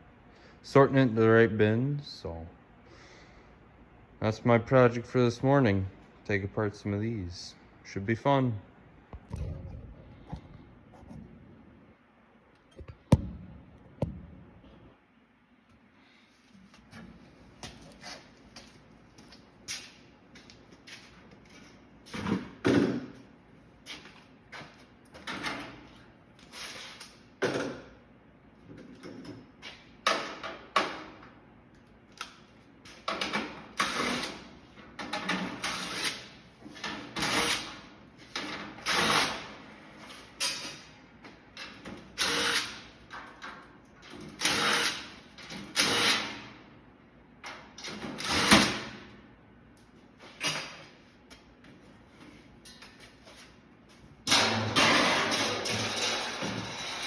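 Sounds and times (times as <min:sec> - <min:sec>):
power drill bursts: 0:42.2 - 0:42.7.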